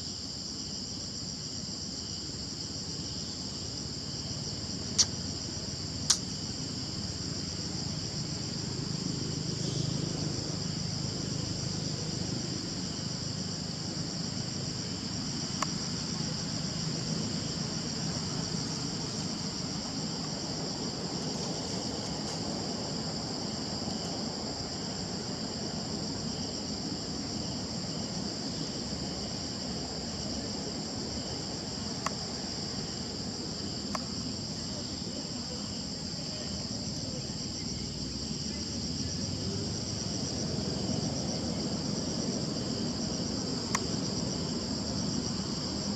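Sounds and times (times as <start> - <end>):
high-pitched insect chorus: 0.0 - 45.9
sharp clicks: 6.1 - 6.3.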